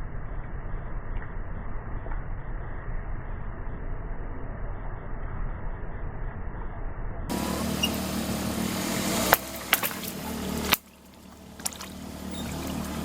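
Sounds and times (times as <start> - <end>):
car engine running: 7.3 - 13.0
objects cracking under tyres: 9.2 - 12.4.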